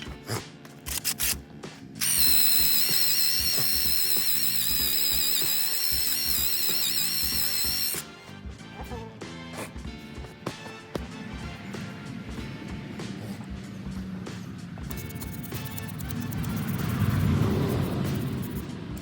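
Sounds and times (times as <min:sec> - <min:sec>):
electric power tool whining: 0:02.0 - 0:08.2.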